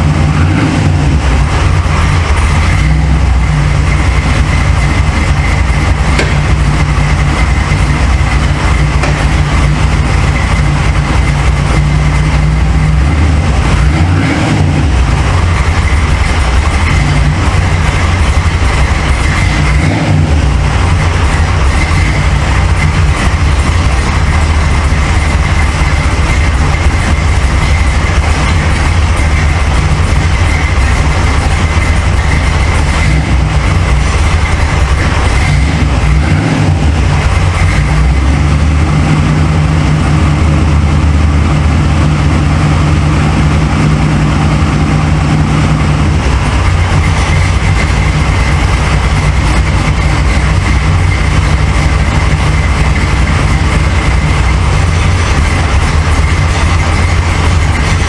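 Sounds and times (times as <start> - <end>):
car engine running: 0.0 - 58.0.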